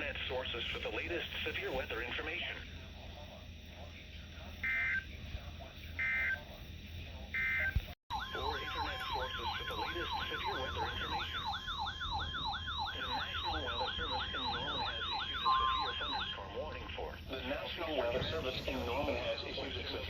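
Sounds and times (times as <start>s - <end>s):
fast yelping siren: 4.6s - 5.0s, 6.0s - 6.4s, 7.4s - 17.1s
high buzzing data bursts: 4.6s - 5.2s, 5.8s - 20.0s
steady high alert tone: 7.4s - 18.2s.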